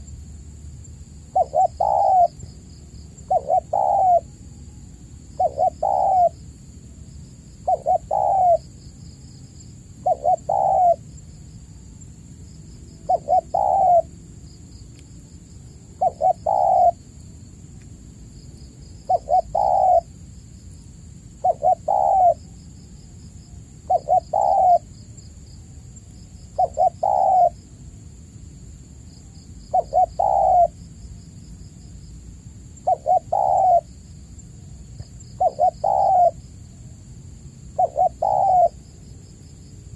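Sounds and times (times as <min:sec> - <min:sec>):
dove cooing: 0:01.3 - 0:02.5, 0:03.2 - 0:04.3, 0:05.4 - 0:06.4, 0:07.6 - 0:08.7, 0:10.0 - 0:11.0, 0:13.0 - 0:14.1, 0:16.0 - 0:17.0, 0:19.0 - 0:20.2, 0:21.4 - 0:22.6, 0:23.8 - 0:24.9, 0:26.5 - 0:27.6, 0:29.7 - 0:30.8, 0:32.8 - 0:33.9, 0:35.4 - 0:36.4, 0:37.7 - 0:38.8.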